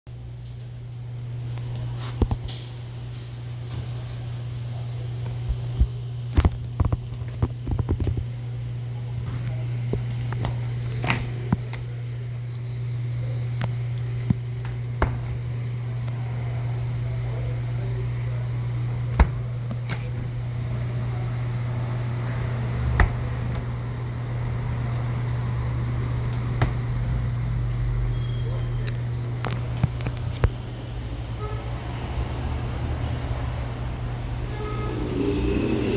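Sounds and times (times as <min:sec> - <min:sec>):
steady low hum: 0:33.6 - 0:35.9.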